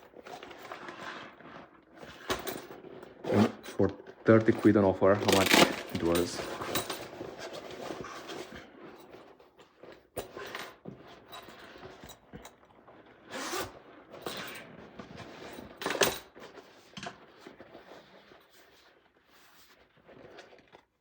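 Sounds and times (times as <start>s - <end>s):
backpack fabric rustling: 5.2s - 6.5s.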